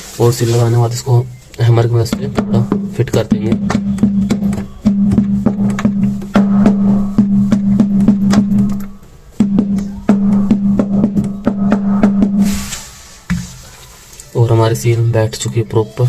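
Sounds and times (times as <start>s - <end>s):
quick percussive beat: 1.7s - 13.6s
low drone: 4.9s - 13.2s.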